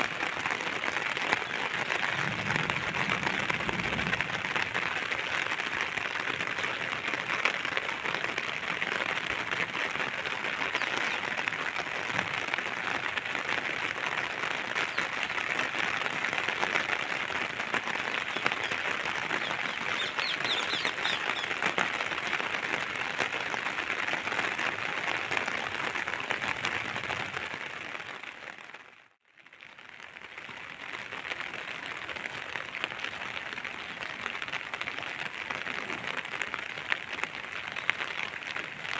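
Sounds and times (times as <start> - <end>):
rain pattering on surfaces: 0.0 - 38.9
bird chirps: 19.7 - 21.5.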